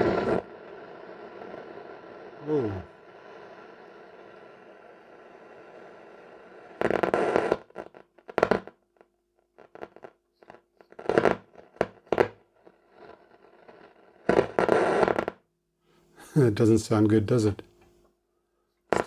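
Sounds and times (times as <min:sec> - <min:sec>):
faint hum: 0:00.0 - 0:06.8
radio loudspeaker hiss: 0:00.0 - 0:07.0, 0:16.2 - 0:17.7
crackling static bursts: 0:00.0 - 0:15.5, 0:16.2 - 0:17.7.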